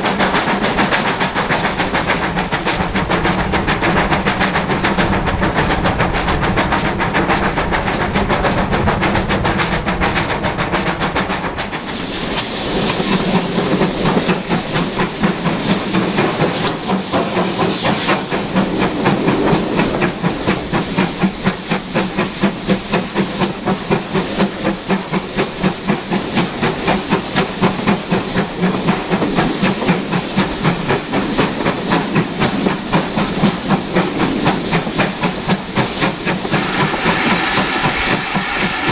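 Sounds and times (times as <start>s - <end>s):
steam locomotive exhaust beating: 0.0s - 38.9s
loud steam hiss: 11.6s - 38.9s.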